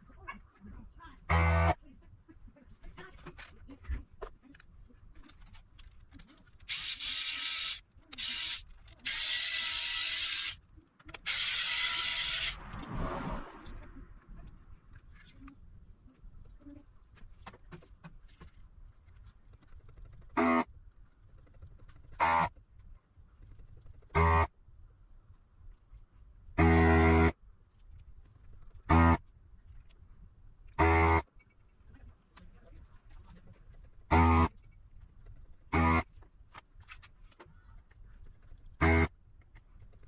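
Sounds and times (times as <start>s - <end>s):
low air rush: 12.5s - 14.8s.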